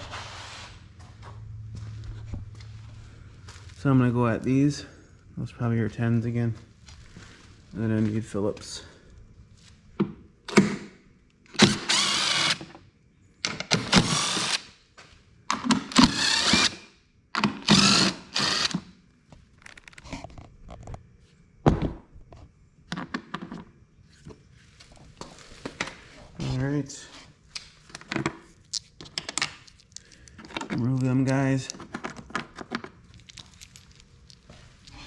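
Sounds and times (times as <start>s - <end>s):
power drill spinning: 11.5s - 12.7s, 13.6s - 14.7s, 15.9s - 16.8s, 17.6s - 18.8s
clicks of handled parts: 27.5s - 35.0s.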